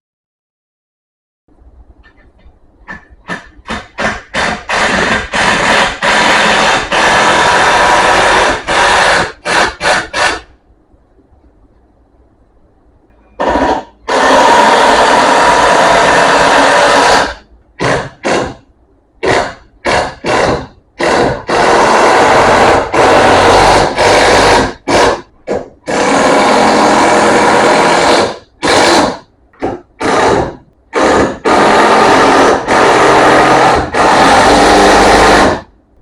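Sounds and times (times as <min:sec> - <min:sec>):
electric power drill running: 0:04.4 - 0:10.3, 0:25.9 - 0:29.1, 0:30.0 - 0:35.6.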